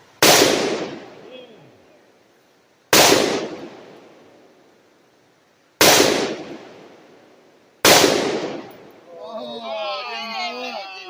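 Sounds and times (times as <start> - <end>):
gunshots: 0.2 - 1.3, 2.9 - 4.0, 5.8 - 6.9, 7.8 - 8.9.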